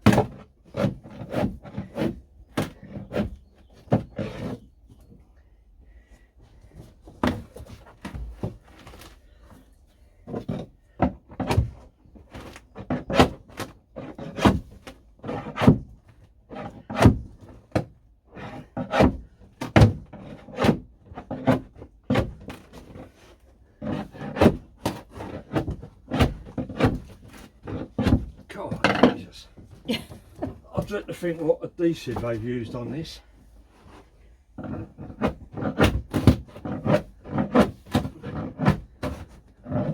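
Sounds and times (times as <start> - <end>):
hand tool striking wood: 23.9 - 29.2.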